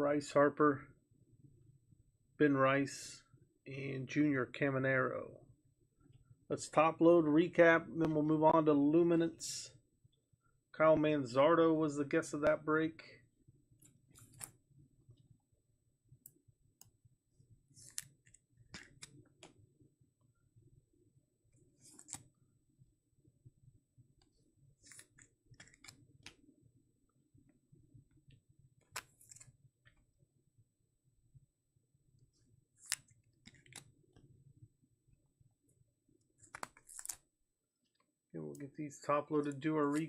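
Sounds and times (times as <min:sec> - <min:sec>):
cards and plastic clicking rustling: 0:13.9 - 0:14.6, 0:17.8 - 0:19.5, 0:21.8 - 0:22.3, 0:24.8 - 0:26.4, 0:28.8 - 0:29.6, 0:32.8 - 0:33.9, 0:36.4 - 0:37.2.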